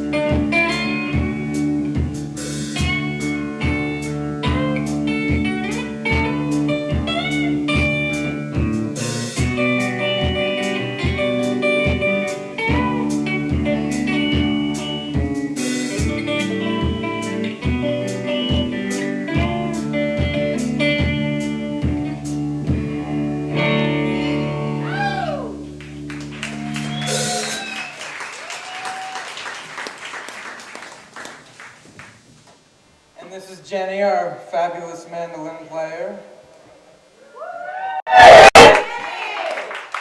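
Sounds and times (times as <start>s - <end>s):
live band guitar music: 0.0s - 28.0s
audience applause: 25.8s - 32.2s, 38.1s - 40.0s.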